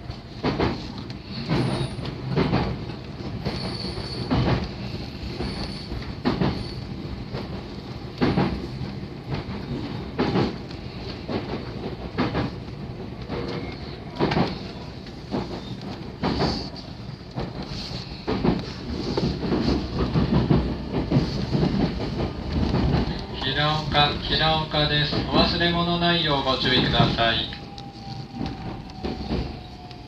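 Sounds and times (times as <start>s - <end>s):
train wheels clacking over rail joints: 0.1s - 25.7s
faint high wheel squeal: 3.5s - 4.3s.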